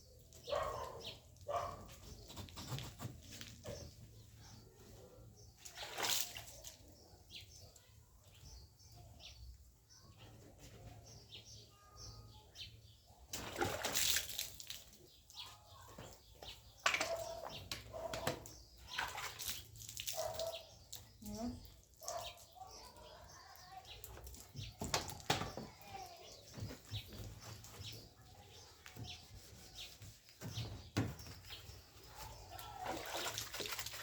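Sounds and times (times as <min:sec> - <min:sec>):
water splashing and pouring: 0:05.6 - 0:06.8, 0:13.3 - 0:15.1, 0:18.8 - 0:20.4, 0:32.2 - 0:34.0.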